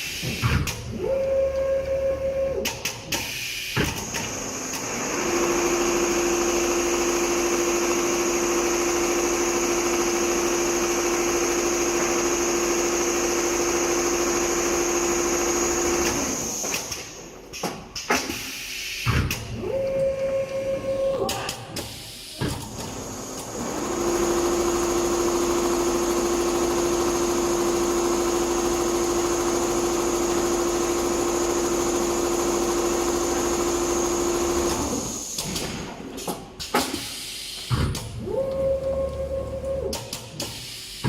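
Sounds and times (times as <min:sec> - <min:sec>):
sewing machine humming: 0:04.0 - 0:17.4, 0:22.7 - 0:35.3.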